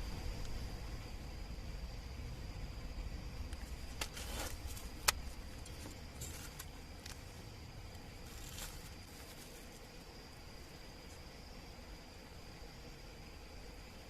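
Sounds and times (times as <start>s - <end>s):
insects trilling: 0.0s - 14.0s
clicks and rustles: 3.5s - 7.4s, 8.0s - 9.9s.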